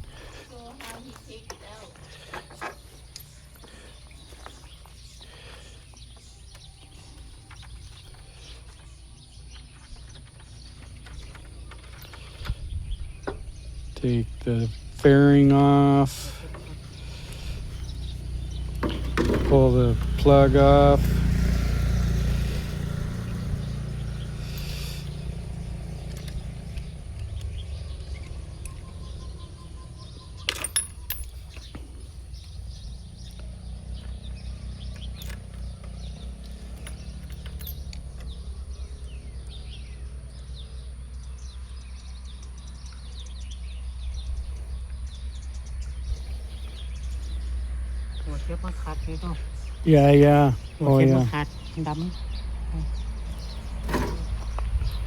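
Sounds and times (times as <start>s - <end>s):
faint bird chirps: 24.2s - 55.0s.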